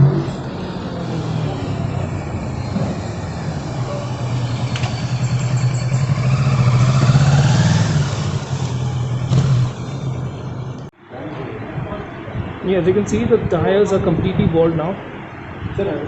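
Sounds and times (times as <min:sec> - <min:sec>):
vehicle engine running: 0:00.0 - 0:10.9
rising engine whine: 0:00.0 - 0:16.0.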